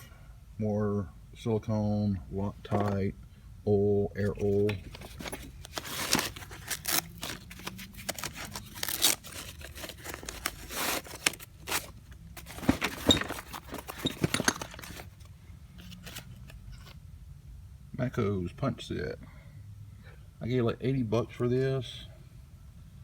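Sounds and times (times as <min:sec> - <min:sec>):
tools handled in tool cart: 0:04.2 - 0:16.9.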